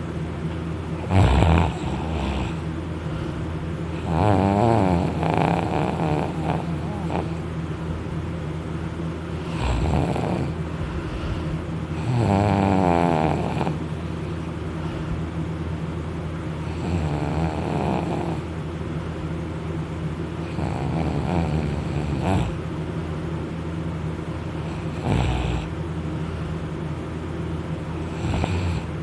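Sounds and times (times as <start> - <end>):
steady low hum: 0.0 - 29.0
person snoring loudly: 1.0 - 2.7, 4.0 - 7.4, 9.4 - 11.3, 12.0 - 13.8, 16.7 - 18.5, 20.4 - 22.6, 24.6 - 25.7, 28.0 - 28.9.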